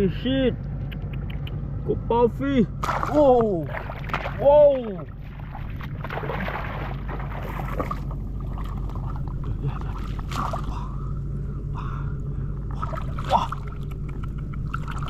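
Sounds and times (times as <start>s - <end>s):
steady low hum: 0.0s - 15.0s
water sloshing and splashing: 2.8s - 11.6s, 12.3s - 15.0s.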